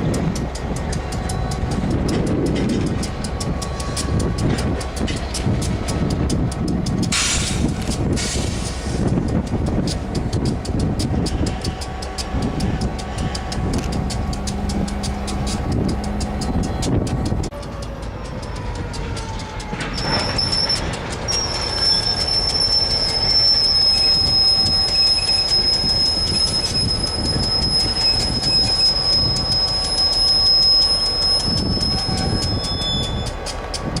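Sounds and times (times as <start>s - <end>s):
low rumble: 0.0s - 28.6s
high-pitched squeal: 9.9s - 34.0s.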